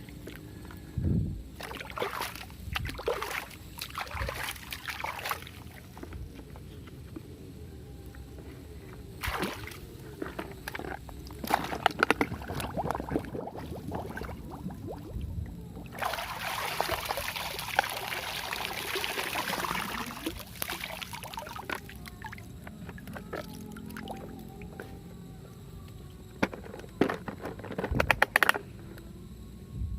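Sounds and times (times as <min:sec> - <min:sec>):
water splashing and sloshing: 0:01.6 - 0:06.4, 0:09.2 - 0:24.5
pouring water rushing: 0:15.9 - 0:21.6
plastic toy trucks knocking: 0:26.4 - 0:28.6.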